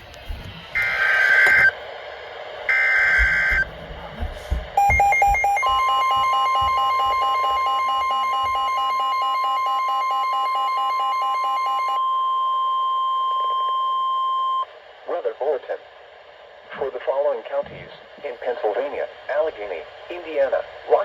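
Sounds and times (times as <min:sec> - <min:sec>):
steady warning alarm tone: 0:00.8 - 0:01.8, 0:02.7 - 0:14.7
rapid pulsing alert beeps: 0:04.8 - 0:12.0.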